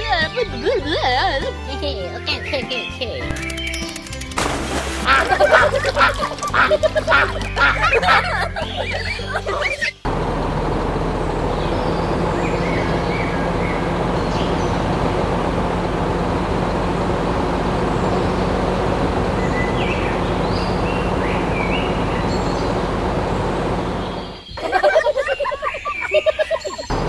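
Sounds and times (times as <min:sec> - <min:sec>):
motorised machine running: 0:10.0 - 0:24.4.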